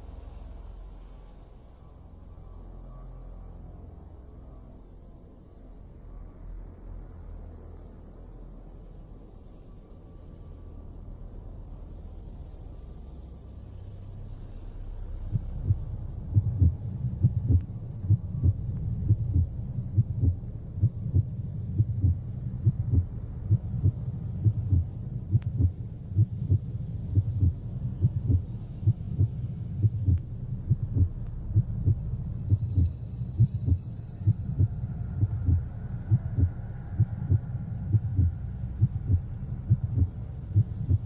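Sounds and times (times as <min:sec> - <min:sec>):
heartbeat thumps: 0:15.3 - 0:41.0.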